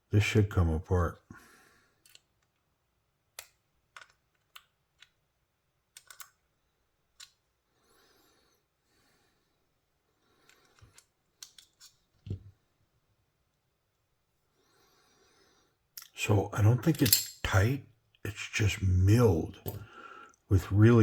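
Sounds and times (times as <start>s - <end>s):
small metal parts clicking: 2.0s - 2.6s, 3.4s - 5.2s, 5.9s - 6.5s, 10.5s - 12.0s, 16.9s - 17.5s.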